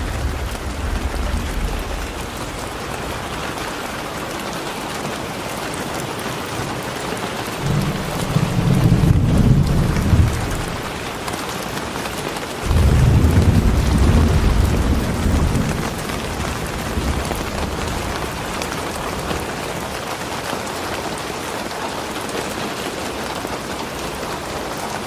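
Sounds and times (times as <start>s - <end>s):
low rumble of thunder: 0.0s - 4.9s, 7.6s - 11.4s, 12.6s - 20.0s
steady rain falling: 0.0s - 25.0s.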